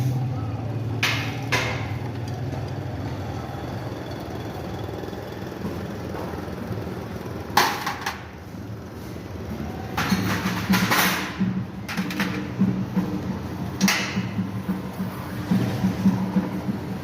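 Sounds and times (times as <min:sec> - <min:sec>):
motorcycle engine idling: 0:00.1 - 0:08.1.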